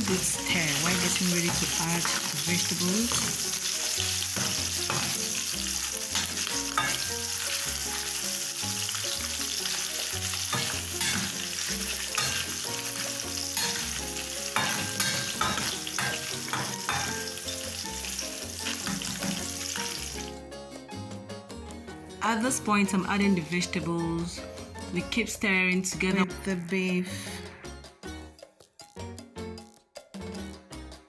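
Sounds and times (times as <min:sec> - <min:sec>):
meat sizzling in oil: 0:00.0 - 0:20.3.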